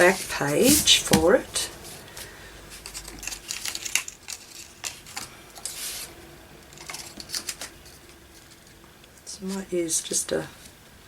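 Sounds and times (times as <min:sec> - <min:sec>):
paper rustling and crinkling: 0:00.0 - 0:06.1.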